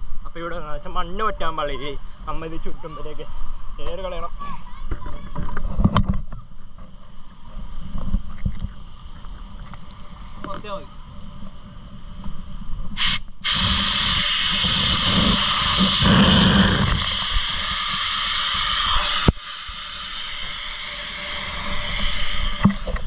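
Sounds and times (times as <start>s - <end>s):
air hissing out of valve: 13.0s - 23.0s.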